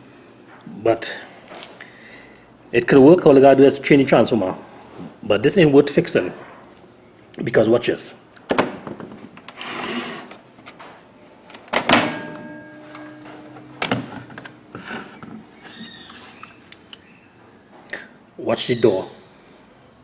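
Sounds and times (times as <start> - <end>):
loud metallic clank: 11.8 - 15.3
faint squeaks: 14.8 - 17.3.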